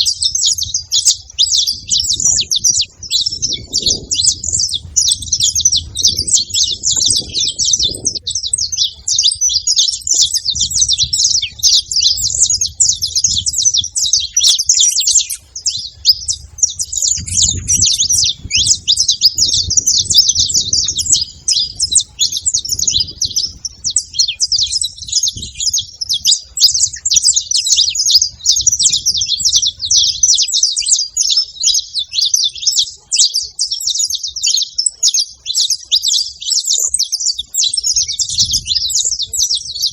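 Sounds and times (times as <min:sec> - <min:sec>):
finch singing rapid chirps: 0:00.0 - 0:39.9
low rumble: 0:01.6 - 0:08.9.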